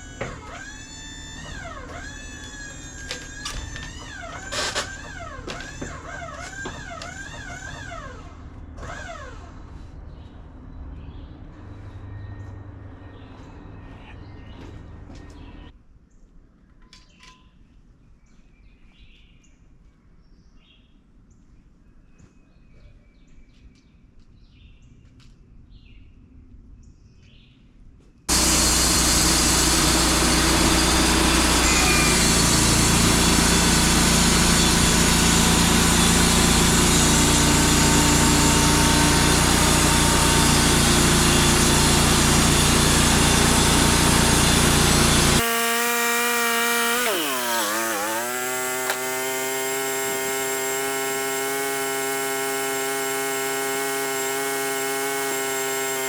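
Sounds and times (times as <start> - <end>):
band sawmill running: 0.0 - 9.8, 28.3 - 56.0
birds chirping: 10.0 - 15.8.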